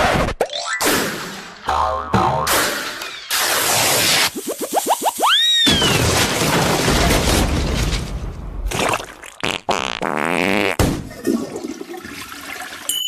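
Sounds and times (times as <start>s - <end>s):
warbling sound effect: 3.1s - 5.7s.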